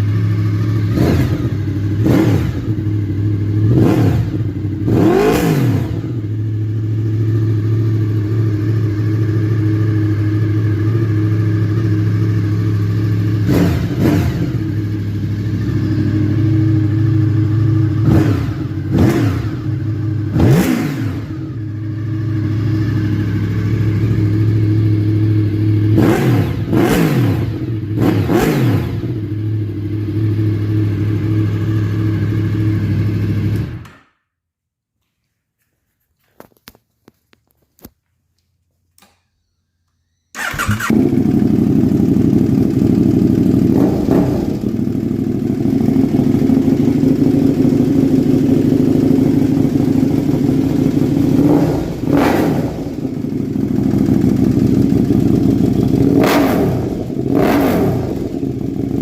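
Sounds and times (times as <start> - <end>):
engine revving throttle blips: 0.0 - 7.6, 10.7 - 29.9, 39.0 - 44.8, 50.2 - 59.0
motorcycle engine idling: 0.0 - 33.9, 39.9 - 59.0.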